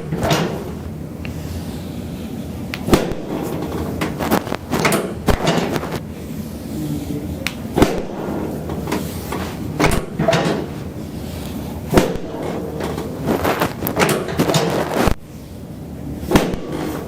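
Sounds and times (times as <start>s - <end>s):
spine cracking during adjustment: 2.8s - 6.0s, 11.9s - 15.2s.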